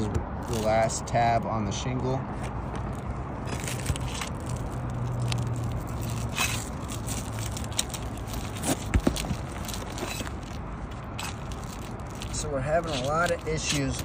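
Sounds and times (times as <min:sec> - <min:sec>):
shingle seal crackling and tearing: 0:02.8 - 0:14.0
scrapes: 0:05.2 - 0:14.0.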